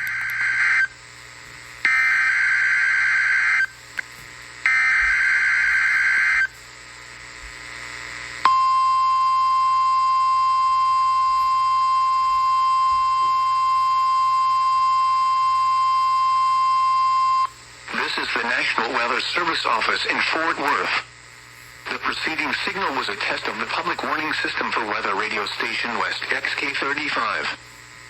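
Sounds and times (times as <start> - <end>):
steady warning alarm tone: 1.9 - 3.7, 4.7 - 6.5, 8.4 - 20.0.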